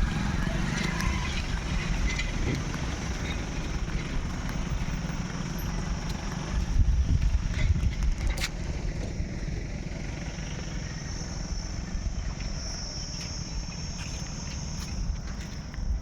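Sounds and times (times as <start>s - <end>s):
insects droning: 8.6s - 16.0s.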